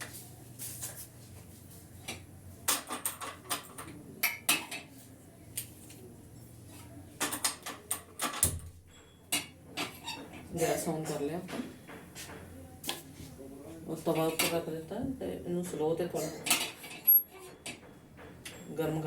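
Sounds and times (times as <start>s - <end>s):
metal utensils clattering: 16.2s - 19.0s.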